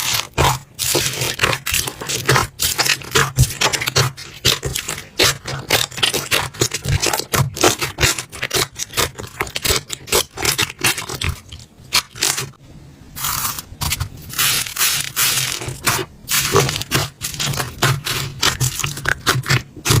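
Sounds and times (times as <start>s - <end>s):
slime crackling and popping: 0.0s - 12.6s, 13.2s - 20.0s
slime hissing: 13.2s - 20.0s.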